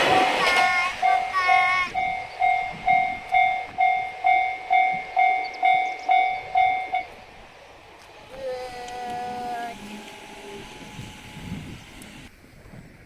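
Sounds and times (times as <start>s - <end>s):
level crossing warning bell: 0.2s - 7.3s.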